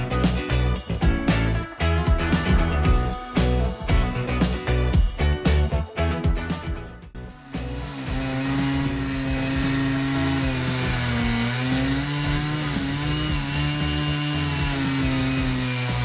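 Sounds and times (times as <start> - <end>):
power tool motor running: 7.9 - 16.0.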